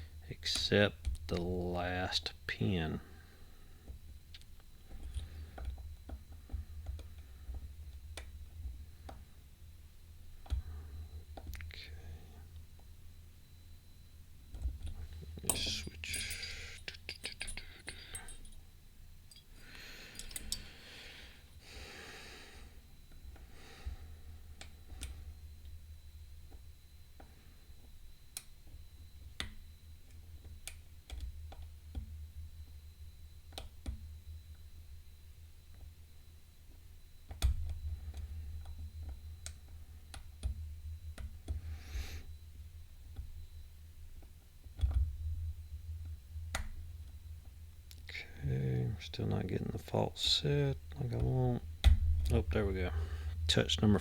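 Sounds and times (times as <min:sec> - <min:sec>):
steady low hum: 0:00.0 - 0:54.0
person breathing: 0:16.0 - 0:18.5, 0:19.6 - 0:25.3, 0:41.6 - 0:42.4, 0:52.9 - 0:53.4
lock pick metallic clicks: 0:20.2 - 0:20.6.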